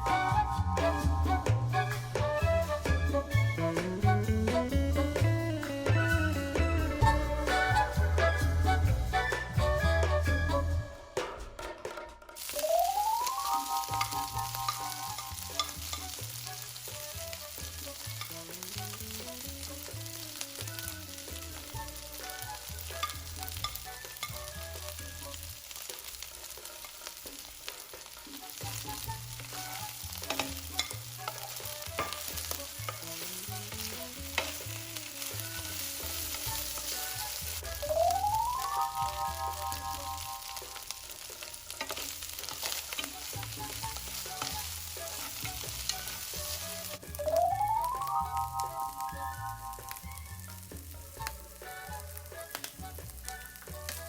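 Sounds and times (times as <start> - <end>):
rice sizzling in a pan: 0.0 - 10.8, 12.4 - 54.0
quiet background music with bass: 0.0 - 11.6, 13.1 - 54.0
rising chime: 12.5 - 15.4, 37.8 - 40.8, 47.1 - 50.1
utensil scraping a pan: 25.8 - 37.4, 39.7 - 47.0.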